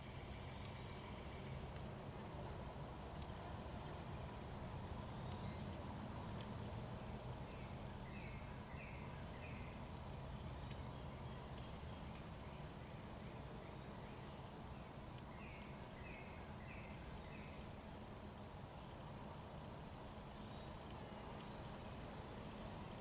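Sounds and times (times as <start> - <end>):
insect buzzing trill: 2.4 - 7.0, 19.9 - 23.0.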